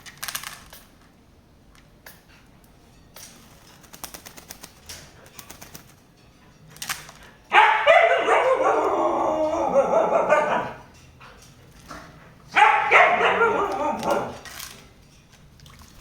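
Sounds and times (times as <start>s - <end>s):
loud wavering animal cry: 7.5s - 10.9s, 12.6s - 14.5s.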